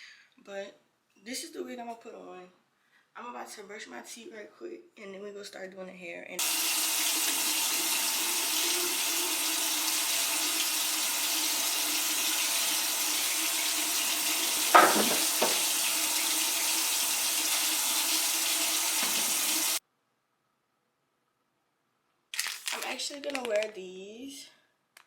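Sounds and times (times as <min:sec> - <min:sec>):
sink tap running: 0:06.4 - 0:19.8.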